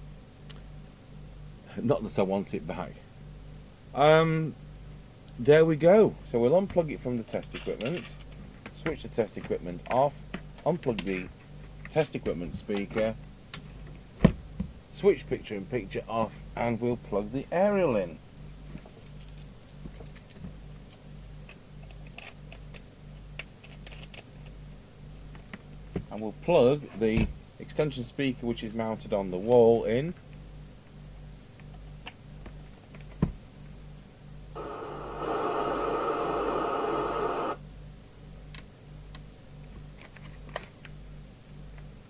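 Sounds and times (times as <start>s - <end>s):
low steady hum: 0.0s - 42.0s
radio static hiss with transmission: 34.6s - 37.6s.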